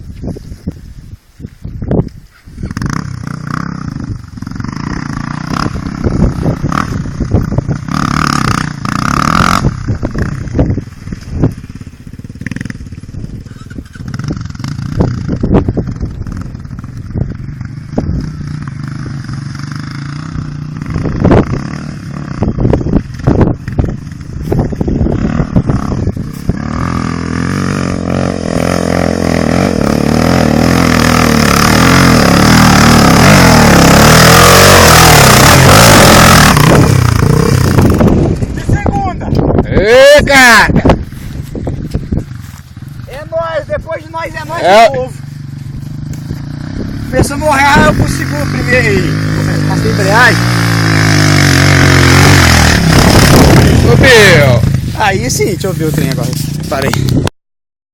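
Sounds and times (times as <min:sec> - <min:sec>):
motorcycle engine running: 0:01.7 - 0:57.3.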